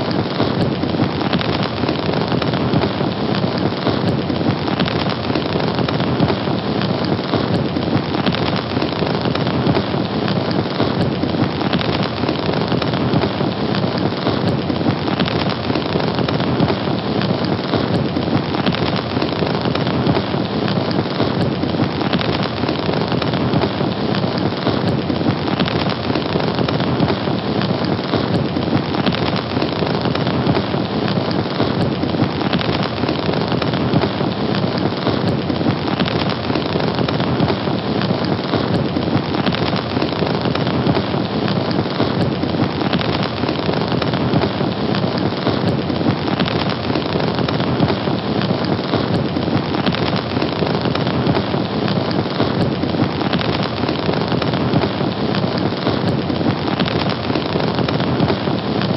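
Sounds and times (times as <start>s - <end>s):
fire burning: 0.0s - 58.9s.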